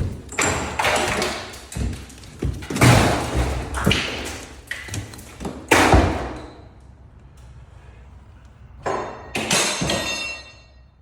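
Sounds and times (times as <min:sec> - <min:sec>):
heavy blows on drywall: 0:00.0 - 0:04.7
metallic clang: 0:08.9 - 0:10.9.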